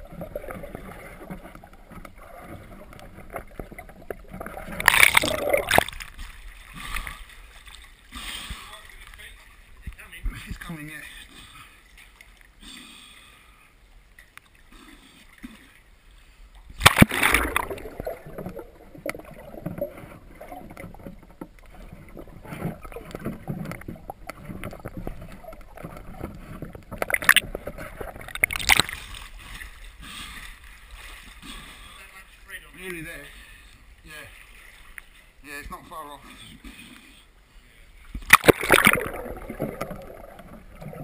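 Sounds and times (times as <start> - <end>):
pond water splashing and gurgling: 0.0 - 33.3, 38.0 - 41.0
loud splash: 4.8 - 6.1, 16.8 - 19.4, 28.2 - 29.2, 38.2 - 40.3.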